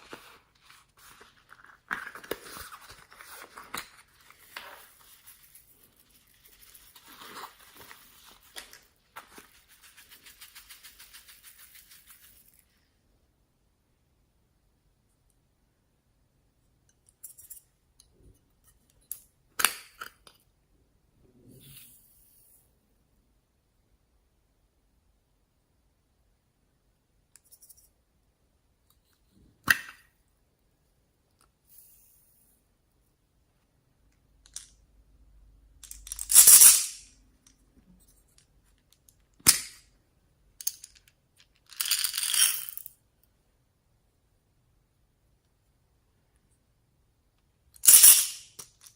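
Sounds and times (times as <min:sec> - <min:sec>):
soft rustle: 0:00.0 - 0:13.0.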